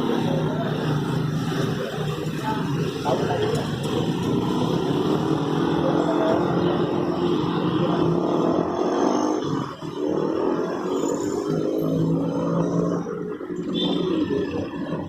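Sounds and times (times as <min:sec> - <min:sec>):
engines running loudly: 0:00.0 - 0:15.0.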